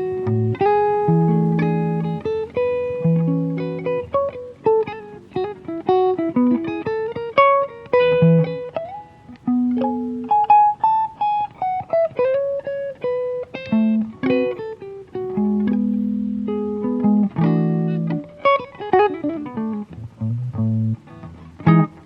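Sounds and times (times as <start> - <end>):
acoustic guitar picking: 0.0 - 22.0.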